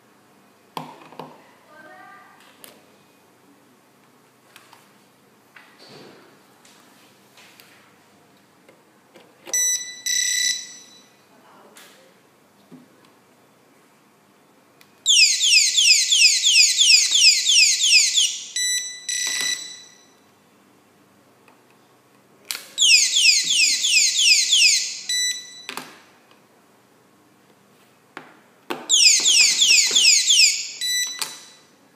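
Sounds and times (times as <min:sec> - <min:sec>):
electronic alarm sweeps: 0:15.1 - 0:20.2, 0:22.8 - 0:25.7, 0:28.9 - 0:31.6
short beeps: 0:18.2 - 0:20.2, 0:24.5 - 0:25.8, 0:29.0 - 0:31.6.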